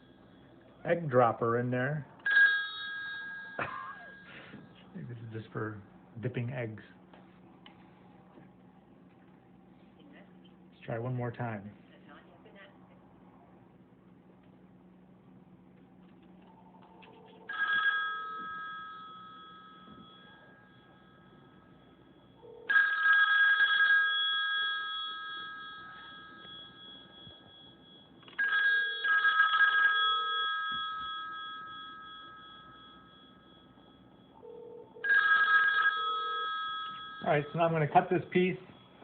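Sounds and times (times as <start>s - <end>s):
telephone bell ringing: 2.2s - 4.8s, 16.4s - 39.0s.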